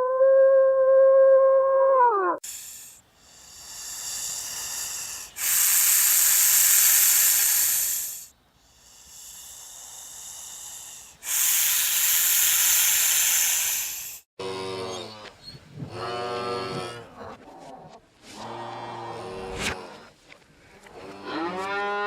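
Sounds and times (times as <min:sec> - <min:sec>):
snake hissing: 0:02.4 - 0:14.3.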